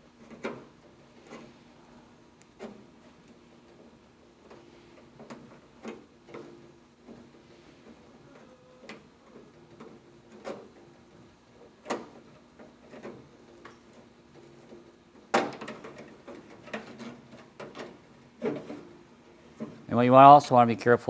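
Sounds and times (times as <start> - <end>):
small clicks and rattles: 0.1 - 1.7, 2.4 - 19.9.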